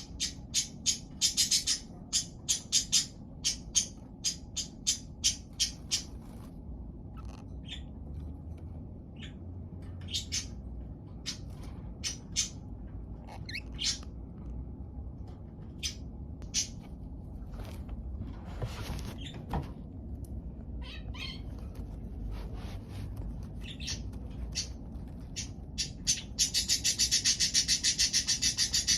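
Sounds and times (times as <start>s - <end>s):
budgerigars chirping: 0.0s - 6.2s, 7.2s - 7.9s, 10.0s - 10.6s, 11.2s - 12.6s, 13.3s - 14.1s, 15.8s - 16.8s, 23.6s - 28.9s
steady low hum: 0.0s - 28.9s.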